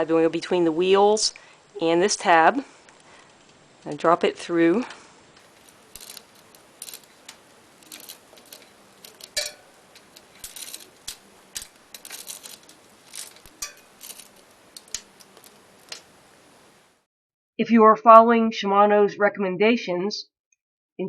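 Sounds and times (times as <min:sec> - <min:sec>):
bicycle chain clinking: 0:05.4 - 0:16.7.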